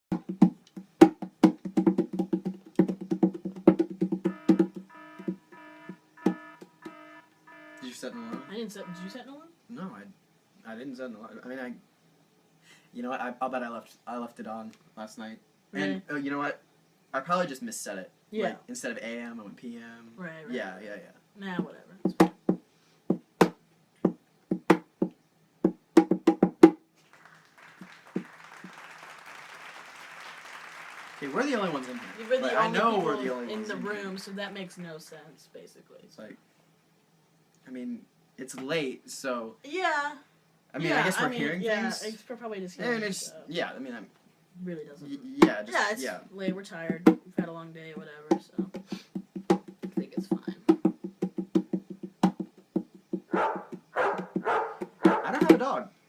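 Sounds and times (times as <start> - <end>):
wood block percussion notes: 0.1 - 9.0
faint applause: 27.0 - 34.8.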